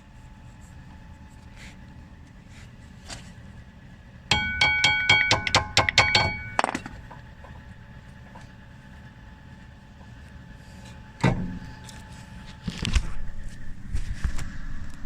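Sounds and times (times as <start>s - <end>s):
sharp metallic clinks: 4.3s - 6.9s
dull metal knock: 4.3s - 7.6s.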